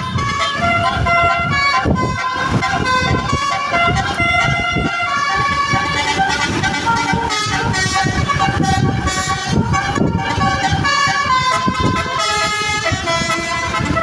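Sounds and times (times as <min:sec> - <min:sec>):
bus horn melody: 0:00.0 - 0:14.0
low pulsing beat: 0:00.0 - 0:14.0.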